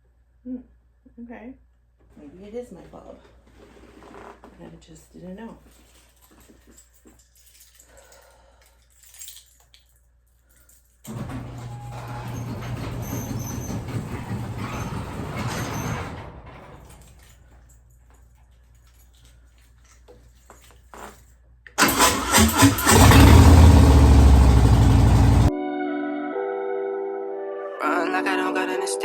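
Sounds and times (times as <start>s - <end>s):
motorcycle engine cranking and running: 11.1s - 16.6s, 21.8s - 25.5s.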